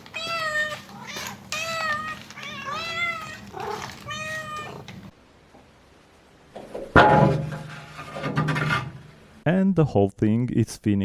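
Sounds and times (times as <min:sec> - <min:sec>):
cat meowing: 0:00.0 - 0:05.1.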